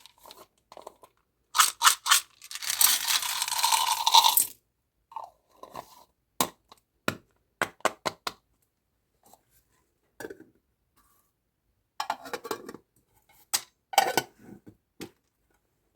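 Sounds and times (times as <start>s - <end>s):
packaging clicking and clinking: 1.6s - 4.5s.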